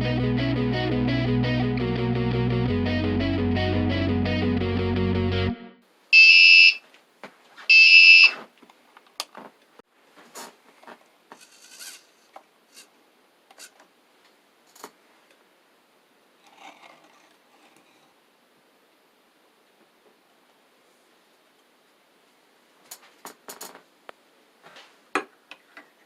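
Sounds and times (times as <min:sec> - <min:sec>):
shrill electronic buzzer beeps: 0:06.2 - 0:06.8, 0:07.7 - 0:08.4.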